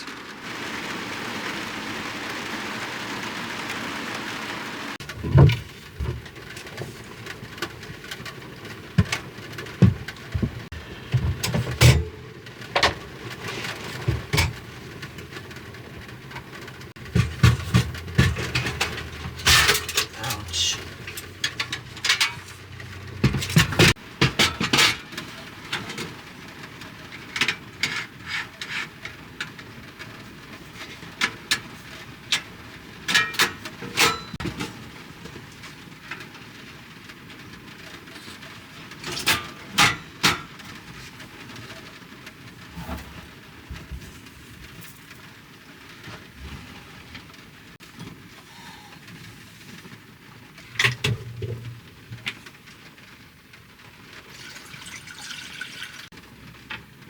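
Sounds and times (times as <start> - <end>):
cookware and utensils clinking: 9.0 - 15.3, 17.0 - 26.1, 32.4 - 35.0, 39.0 - 40.8, 54.4 - 56.1.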